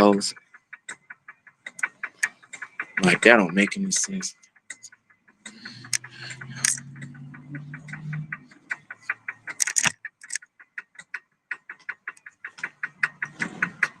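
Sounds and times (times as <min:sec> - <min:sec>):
rapid regular clicking: 0:00.0 - 0:14.0
low hum: 0:02.1 - 0:04.3, 0:05.5 - 0:10.4.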